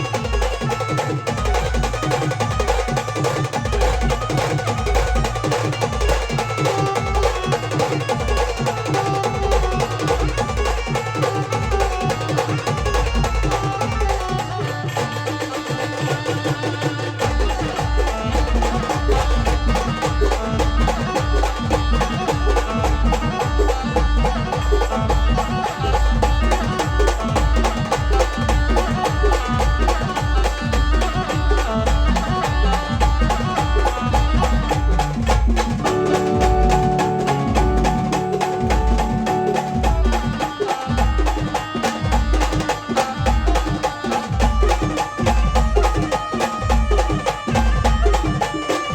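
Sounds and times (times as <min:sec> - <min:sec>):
deep drum beat: 0:00.0 - 0:15.2, 0:17.1 - 0:48.9
folk band music: 0:00.0 - 0:48.9.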